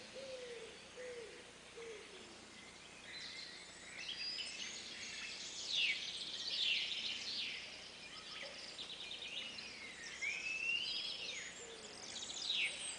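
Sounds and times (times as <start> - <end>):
birds chirping and whistling: 2.5 - 12.9.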